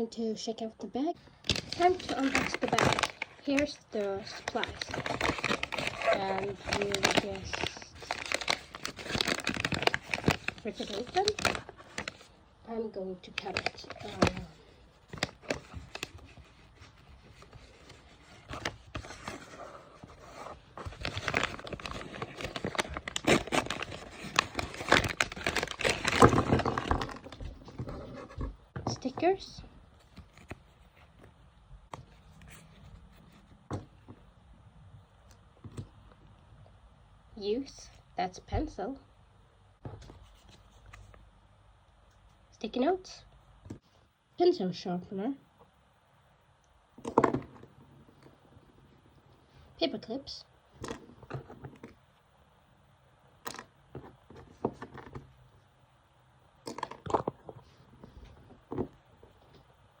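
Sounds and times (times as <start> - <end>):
packaging rustling: 1.4 - 12.4, 13.2 - 29.1.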